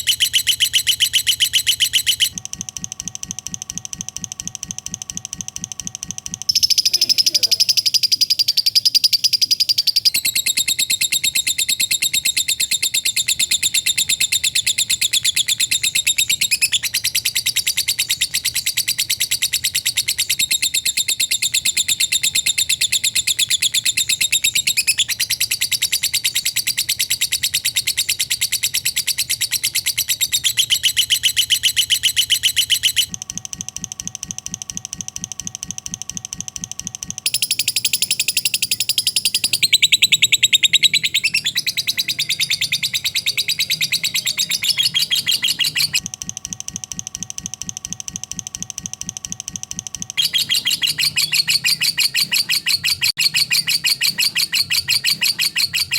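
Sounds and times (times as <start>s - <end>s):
lovebird chattering trill: 0.0s - 2.4s, 6.5s - 33.1s, 37.3s - 46.0s, 50.2s - 55.9s.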